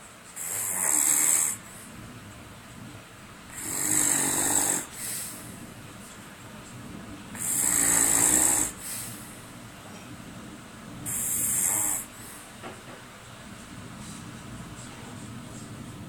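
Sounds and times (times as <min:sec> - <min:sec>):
man snoring: 0:00.4 - 0:01.8, 0:03.5 - 0:05.6, 0:07.3 - 0:09.4, 0:11.0 - 0:12.5
soft breath: 0:03.5 - 0:06.2, 0:07.3 - 0:10.1, 0:11.0 - 0:12.6.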